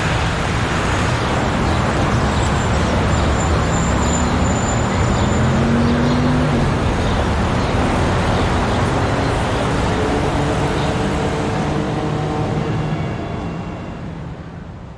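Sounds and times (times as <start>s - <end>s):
street traffic: 0.0s - 14.9s
nearby engine humming: 2.2s - 12.7s.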